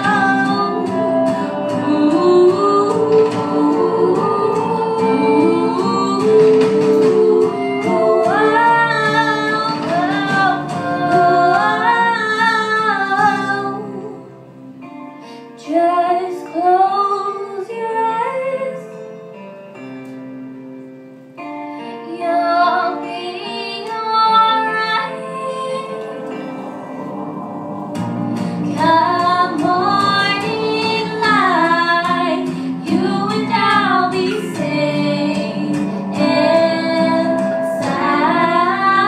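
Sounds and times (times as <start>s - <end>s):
women singing slow song: 0.0s - 14.5s, 21.9s - 39.0s
instrumental accompaniment: 0.0s - 16.8s, 18.9s - 39.0s.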